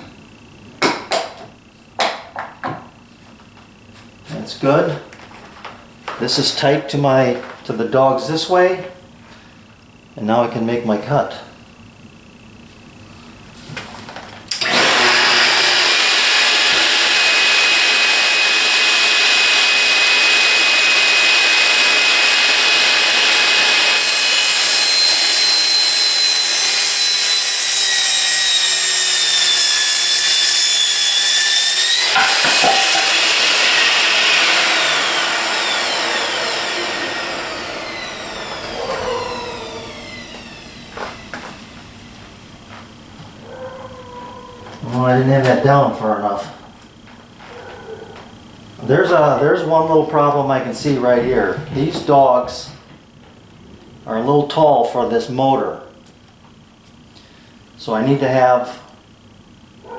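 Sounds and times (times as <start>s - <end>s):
track saw cutting plywood: 14.5s - 42.1s
saw winding down whine: 14.5s - 42.3s.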